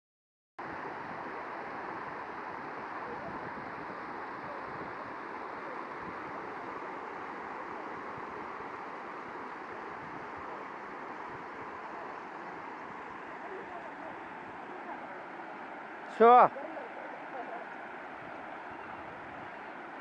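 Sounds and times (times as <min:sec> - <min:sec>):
floodwater rushing: 0:00.6 - 0:20.0.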